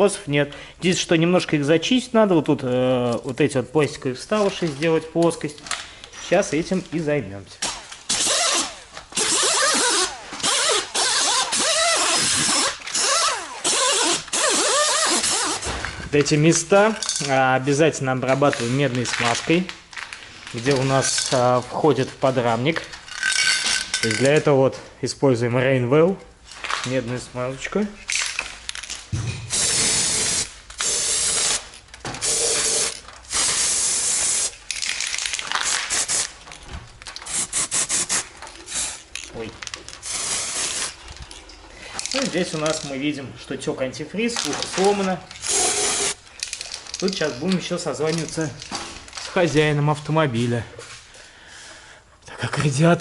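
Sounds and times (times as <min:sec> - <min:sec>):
handheld power tool grinding metal: 0:08.1 - 0:15.6
aerosol can spraying: 0:29.5 - 0:31.6, 0:32.2 - 0:34.5, 0:37.3 - 0:39.0, 0:40.0 - 0:40.9, 0:45.5 - 0:46.2.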